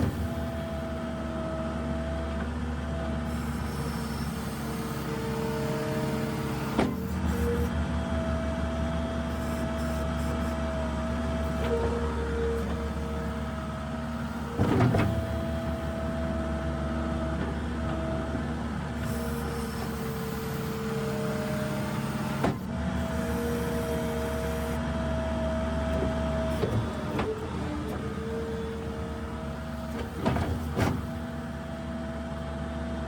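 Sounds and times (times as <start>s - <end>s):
diesel engine running: 0.0s - 33.0s
hydraulic whine: 3.2s - 7.8s, 9.3s - 16.6s, 18.9s - 24.9s
loud clunk: 29.9s - 31.2s.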